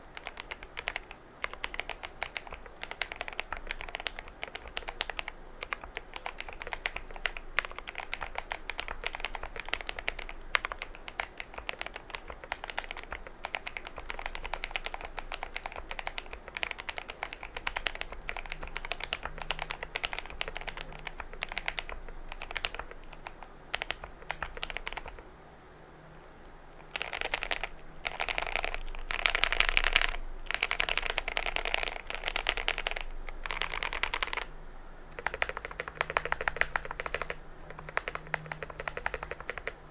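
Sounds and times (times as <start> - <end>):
mechanical keyboard typing: 0.0 - 25.2, 26.8 - 34.5, 35.1 - 39.9.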